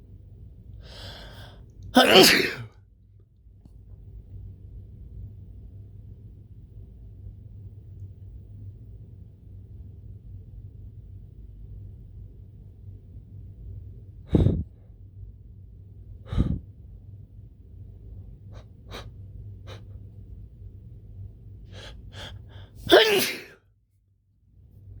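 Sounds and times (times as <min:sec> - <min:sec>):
man sneezing: 0:02.0 - 0:02.7, 0:22.8 - 0:23.6
sharp catching breaths: 0:16.3 - 0:16.6.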